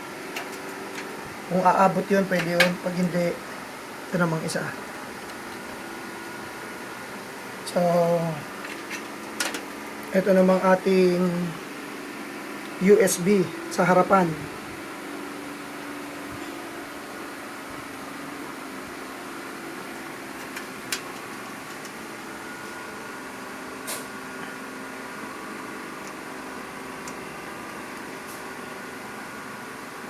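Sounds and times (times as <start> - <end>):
fan hum: 0.0 - 30.0
cables clicking and tapping: 0.2 - 1.3, 8.6 - 10.1, 20.4 - 22.0.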